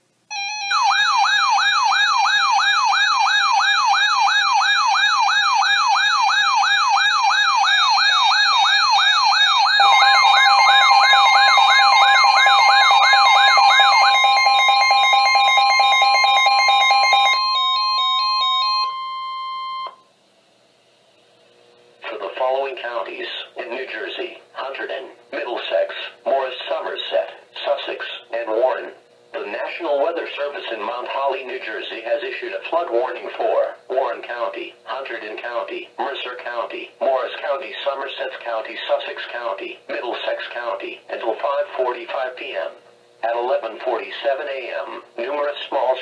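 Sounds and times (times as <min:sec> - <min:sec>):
electronic siren sweeping: 0:00.3 - 0:20.0
alarm tones: 0:00.3 - 0:20.1
steady alert tone: 0:03.0 - 0:20.0.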